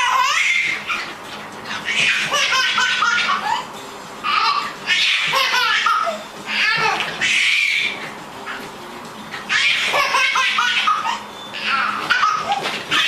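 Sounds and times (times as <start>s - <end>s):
high-pitched laughter: 2.1s - 3.7s, 9.5s - 12.6s.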